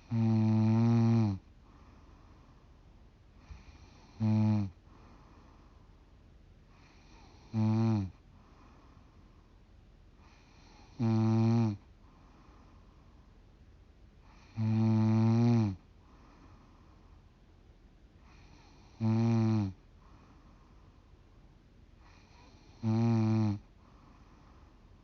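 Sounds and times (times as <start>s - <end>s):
woman snoring: 0.0s - 1.4s, 3.4s - 4.8s, 6.8s - 8.2s, 10.3s - 11.8s, 14.3s - 15.8s, 18.3s - 19.8s, 22.0s - 23.7s
quiet breaths: 0.0s - 25.0s.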